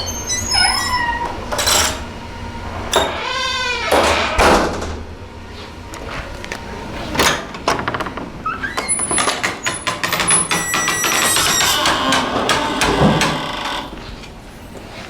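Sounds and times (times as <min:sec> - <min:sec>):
door hardware clicks and squeaks: 0:00.0 - 0:02.1, 0:02.9 - 0:04.8, 0:07.7 - 0:14.3
door swinging and shutting: 0:02.9 - 0:05.1, 0:07.2 - 0:14.1.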